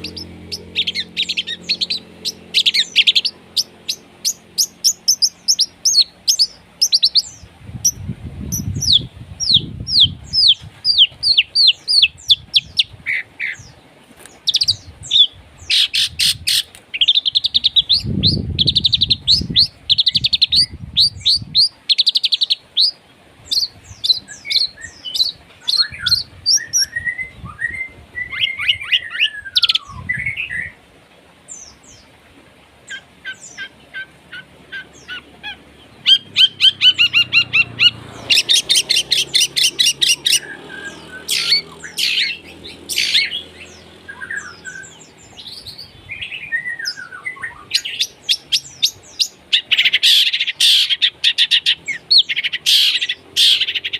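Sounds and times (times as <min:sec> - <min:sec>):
bird singing trills and chatter: 0:00.0 - 0:30.8, 0:32.9 - 0:53.9.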